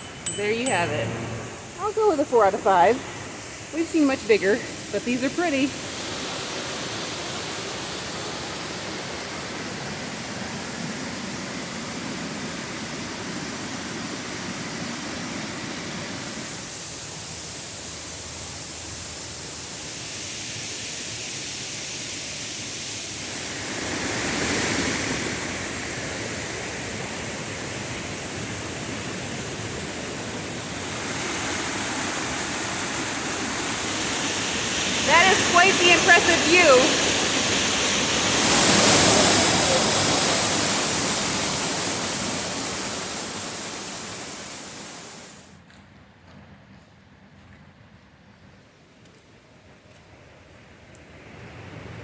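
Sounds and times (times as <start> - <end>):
waterfall rushing: 26.6 - 45.4.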